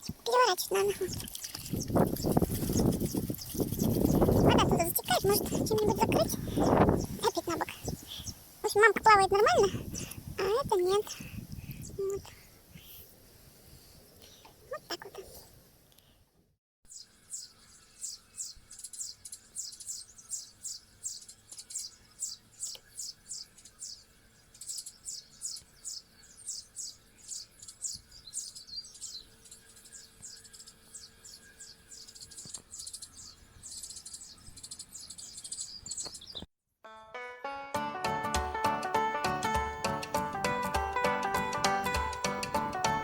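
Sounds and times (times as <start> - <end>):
small bird chirping: 0.0 - 13.0, 16.9 - 36.5.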